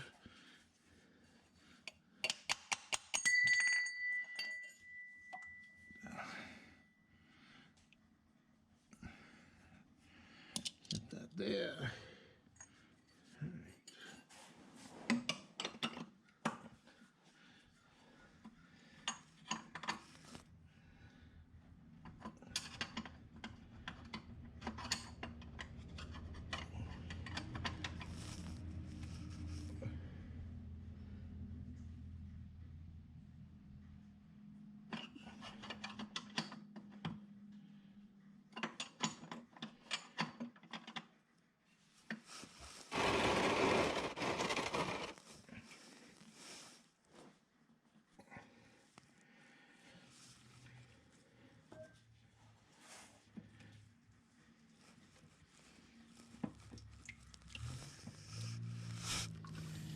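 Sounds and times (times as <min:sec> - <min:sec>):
ringing metal clink: 0:03.1 - 0:06.1.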